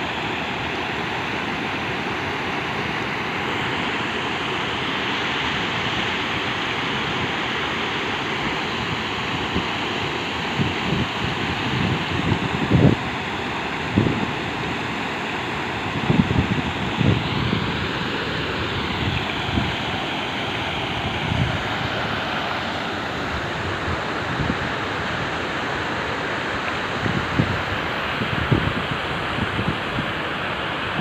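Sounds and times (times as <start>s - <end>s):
waterfall rushing: 0.0s - 31.0s
wind buffeting microphone: 10.6s - 13.1s, 13.9s - 14.3s, 16.0s - 18.0s, 18.7s - 20.0s, 21.0s - 22.1s, 27.0s - 30.2s.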